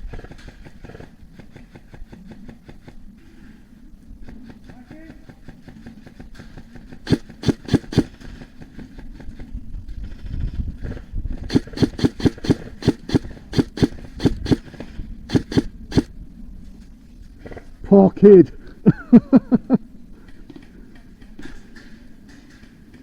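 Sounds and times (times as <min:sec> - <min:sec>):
airsoft gun shots: 0:07.0 - 0:08.6, 0:11.5 - 0:16.1.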